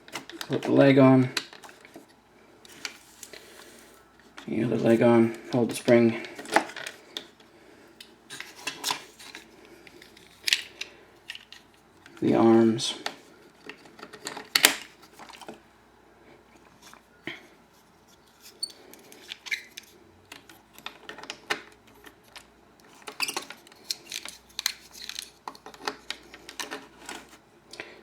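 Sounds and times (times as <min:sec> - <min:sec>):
plastic toy parts clicking: 0:18.9 - 0:27.3.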